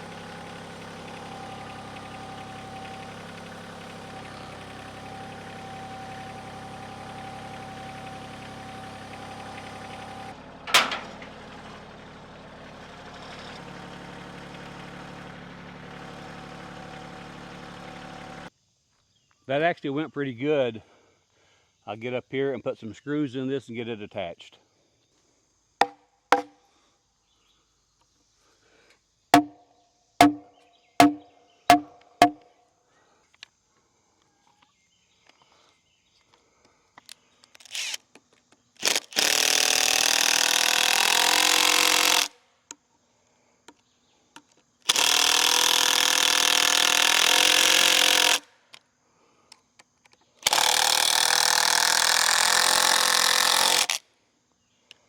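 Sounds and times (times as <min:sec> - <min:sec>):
hammer taps ringing: 0:25.8 - 0:26.5, 0:29.4 - 0:29.6, 0:30.2 - 0:32.4
cordless drill driving screws: 0:38.8 - 0:42.3, 0:44.9 - 0:48.4, 0:50.4 - 0:54.0.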